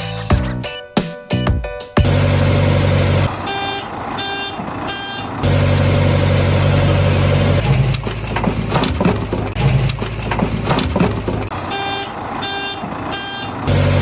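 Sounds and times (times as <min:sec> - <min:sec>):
truck engine running: 0:02.0 - 0:12.3, 0:13.2 - 0:14.0
clattering knocks: 0:07.6 - 0:11.5
reversing beeps: 0:12.5 - 0:13.6.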